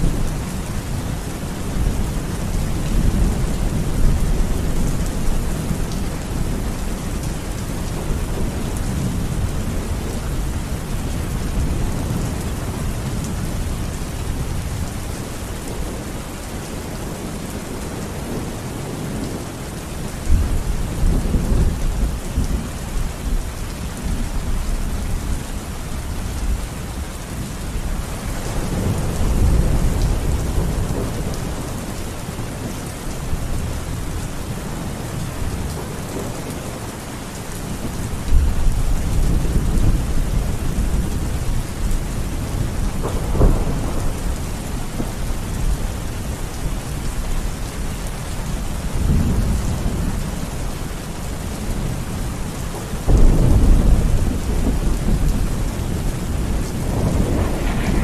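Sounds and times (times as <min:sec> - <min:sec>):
steady rain falling: 0:00.0 - 0:58.0
thunder rumbling: 0:37.6 - 0:48.0, 0:51.2 - 0:58.0.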